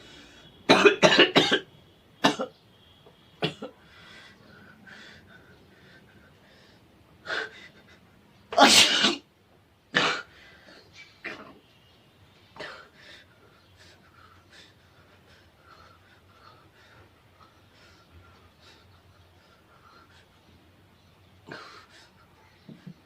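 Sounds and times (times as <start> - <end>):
person sneezing: 8.6 - 9.2.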